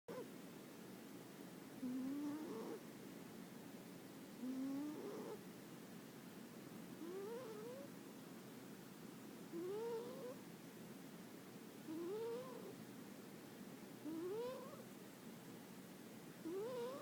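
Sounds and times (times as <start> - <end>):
cat snoring: 1.8 - 2.8, 4.4 - 5.4, 7.0 - 7.9, 9.5 - 10.4, 11.9 - 12.8, 14.0 - 14.8, 16.4 - 17.0.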